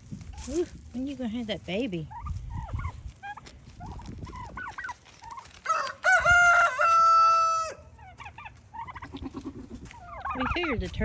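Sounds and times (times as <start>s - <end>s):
turkeys and chickens clucking: 0.0s - 11.0s
rooster crowing: 5.6s - 7.9s.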